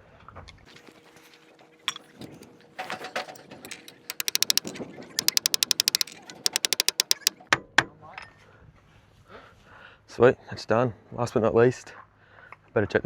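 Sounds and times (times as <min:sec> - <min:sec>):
tool clicking rapidly: 0:03.7 - 0:07.4.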